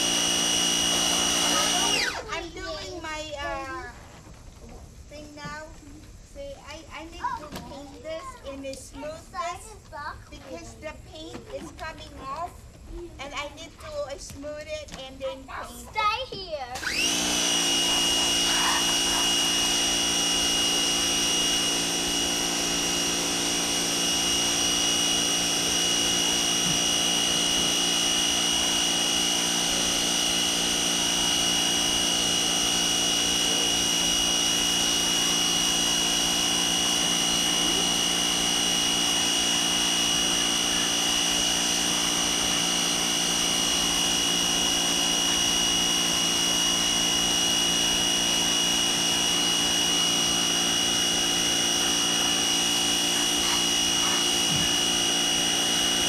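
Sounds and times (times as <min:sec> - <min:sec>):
pressure washer whining: 0:00.0 - 0:06.2, 0:16.8 - 0:56.0
spray hissing: 0:17.2 - 0:24.0.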